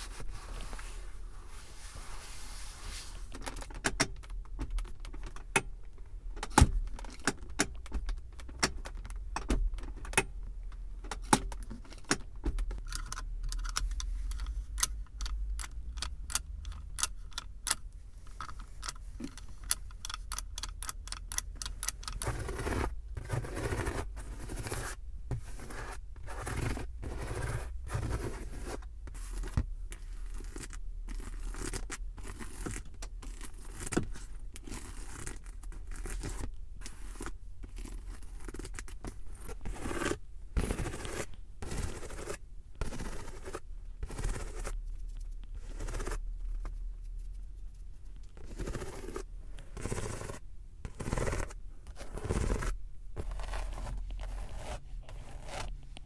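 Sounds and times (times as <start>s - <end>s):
rubbing and scratching strokes: 0.0s - 3.4s, 21.9s - 29.6s, 33.5s - 56.0s.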